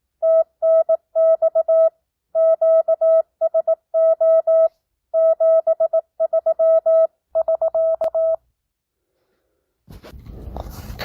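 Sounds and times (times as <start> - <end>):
morse code tone: 0.2 - 8.4.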